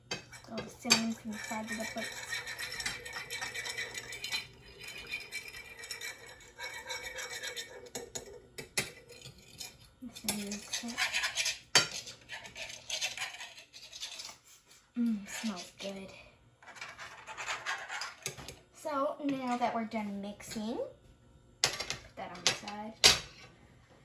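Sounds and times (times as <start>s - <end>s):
utensil whisking in a dish: 0.0s - 16.2s, 16.8s - 18.6s.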